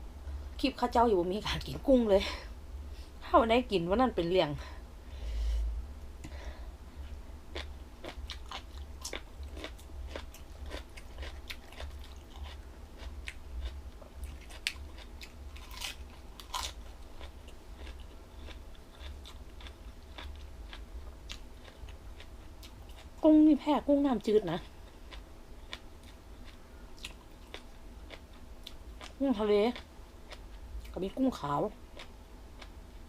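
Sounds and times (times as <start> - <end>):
low steady hum: 0.0 - 33.0
chewing crunchy food: 7.0 - 23.2, 24.2 - 31.0, 31.9 - 33.0.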